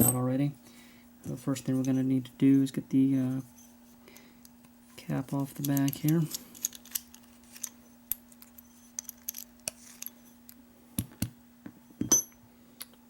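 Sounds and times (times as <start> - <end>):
faint steady hum: 0.0 - 13.0
ringing metal clink: 12.0 - 12.4.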